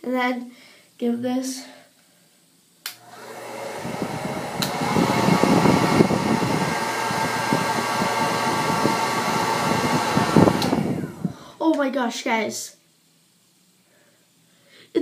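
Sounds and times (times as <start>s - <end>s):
hair dryer blowing: 2.9s - 11.4s.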